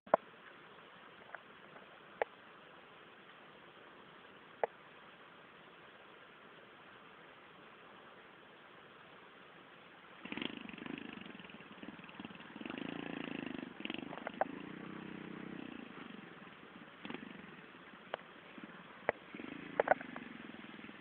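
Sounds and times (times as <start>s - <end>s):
small motorcycle engine running: 10.2s - 21.0s.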